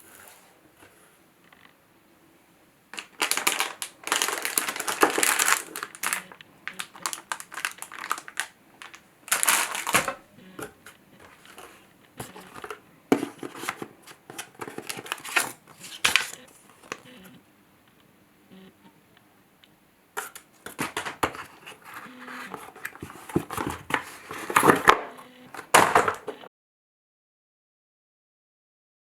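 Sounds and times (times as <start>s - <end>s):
packaging crinkling and rustling: 2.9s - 17.0s, 20.2s - 26.3s.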